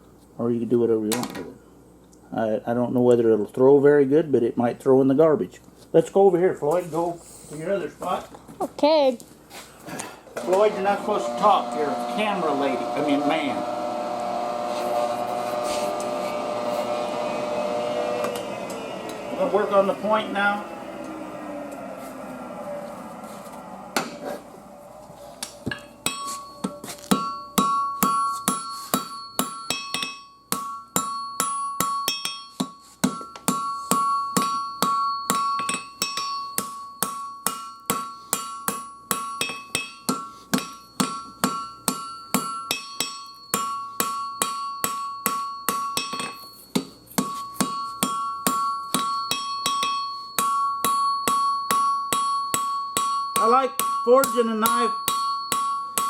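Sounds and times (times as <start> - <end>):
anvil ringing: 17.0 - 32.6, 33.2 - 56.0
hammer striking steel on anvil: 23.6 - 24.2, 25.4 - 56.0.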